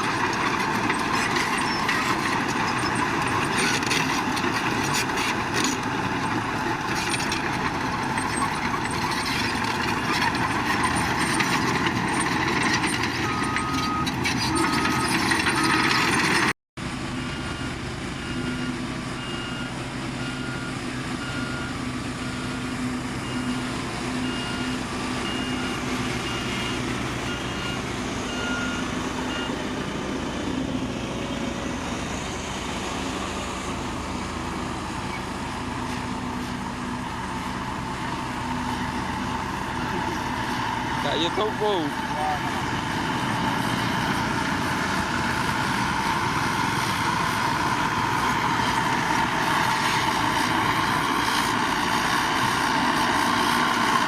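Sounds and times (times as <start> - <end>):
diesel engine of earthmover: 0.0 - 54.0
reversing alarm beeping: 13.2 - 16.0, 17.2 - 29.6.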